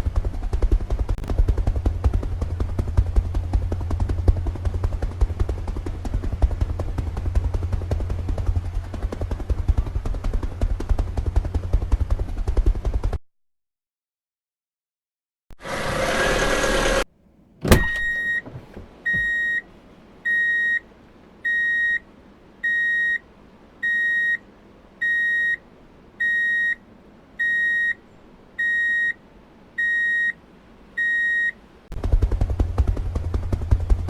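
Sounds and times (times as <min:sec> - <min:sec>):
low hum: 0:00.9 - 0:13.0, 0:32.0 - 0:34.0
reversing alarm beeping: 0:17.6 - 0:19.6, 0:20.3 - 0:20.8, 0:21.5 - 0:22.0, 0:22.6 - 0:23.2, 0:23.8 - 0:24.4, 0:25.0 - 0:25.6, 0:26.2 - 0:26.8, 0:27.4 - 0:28.0, 0:28.6 - 0:29.2, 0:29.8 - 0:30.4, 0:31.0 - 0:31.6.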